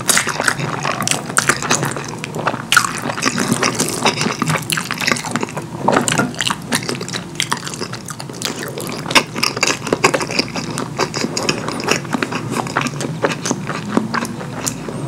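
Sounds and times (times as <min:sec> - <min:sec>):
wet chewing and mouth smacking: 0:00.0 - 0:15.0.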